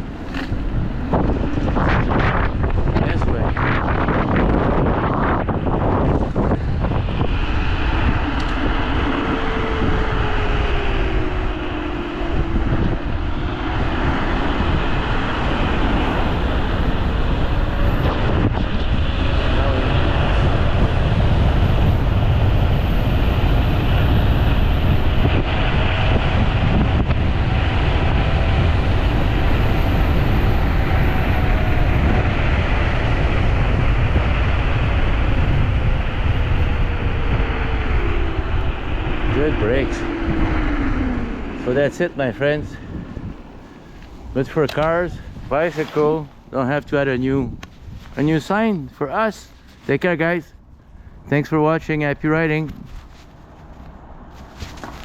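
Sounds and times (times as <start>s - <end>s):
electric scooter motor whine: 0.0s - 45.5s
wind buffeting microphone: 0.0s - 55.0s.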